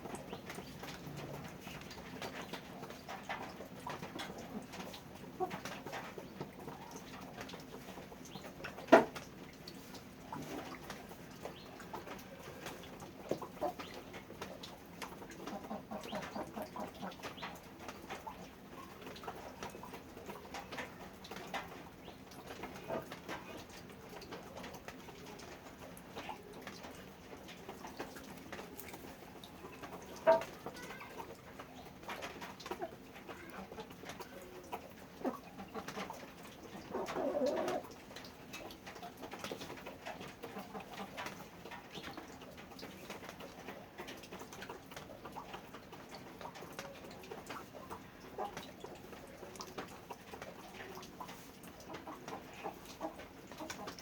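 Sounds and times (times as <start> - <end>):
small clicks and rustles: 0.0 - 54.0
pigeons cooing: 32.8 - 37.9.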